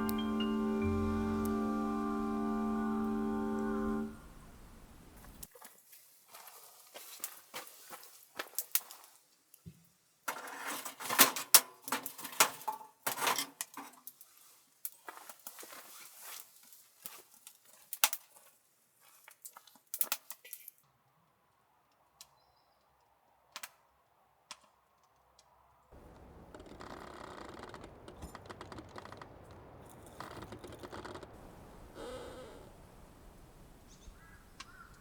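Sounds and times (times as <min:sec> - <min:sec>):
hiss of burning: 0:26.0 - 0:35.0
wood fire crackling and popping: 0:26.0 - 0:35.0.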